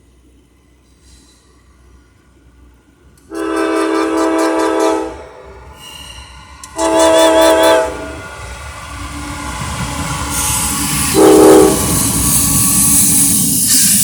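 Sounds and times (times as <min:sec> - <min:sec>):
locomotive air horn blasts: 0:03.3 - 0:05.4, 0:06.8 - 0:08.2, 0:11.1 - 0:12.0.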